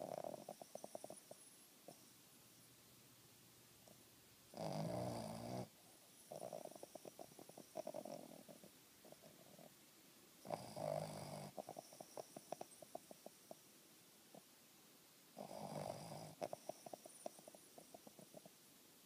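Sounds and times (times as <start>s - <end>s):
dog snoring: 0.0s - 2.0s, 4.5s - 9.7s, 10.4s - 13.6s, 15.4s - 18.5s.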